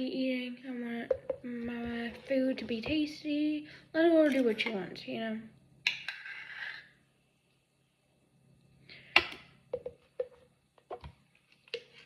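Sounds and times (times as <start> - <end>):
utensil tapping dish: 1.1 - 3.0, 9.7 - 11.1.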